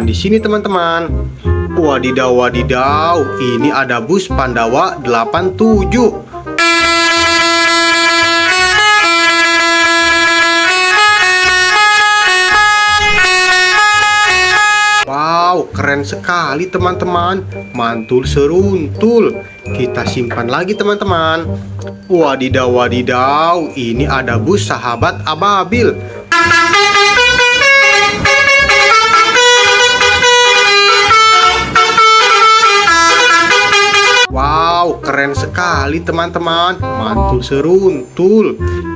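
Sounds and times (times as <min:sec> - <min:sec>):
bus horn playing a melody: 0:06.6 - 0:15.1, 0:26.3 - 0:34.3.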